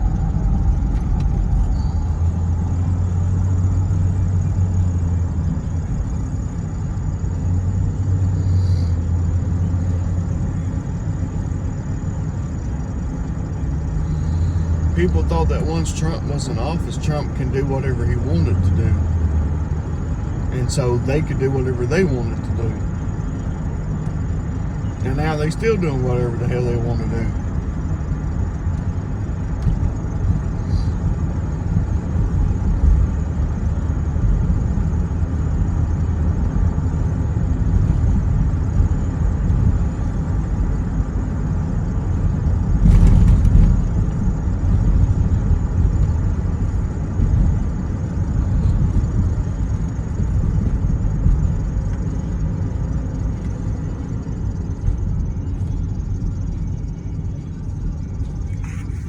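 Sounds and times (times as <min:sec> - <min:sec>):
car road and engine rumble: 0:00.0 - 0:59.0.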